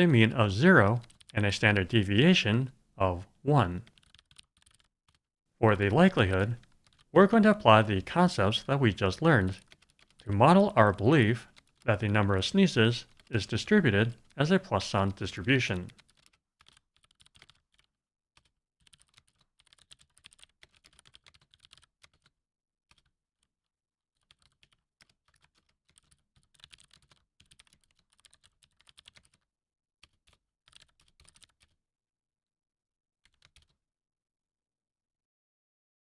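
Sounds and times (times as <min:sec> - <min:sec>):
typing on computer keyboard: 0:00.9 - 0:01.4, 0:03.8 - 0:05.2, 0:05.8 - 0:07.1, 0:07.9 - 0:14.4, 0:15.1 - 0:23.2, 0:24.2 - 0:31.8, 0:33.2 - 0:33.8.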